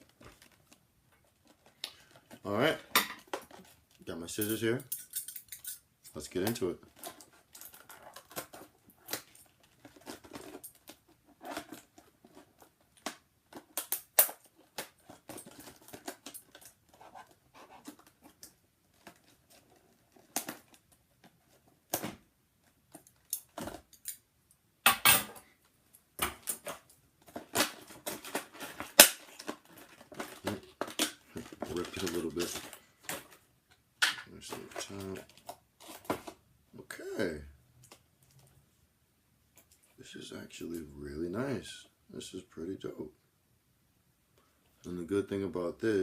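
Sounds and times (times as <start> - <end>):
packaging rustling and clicking: 0.0 - 4.0, 6.4 - 24.1, 26.3 - 33.8.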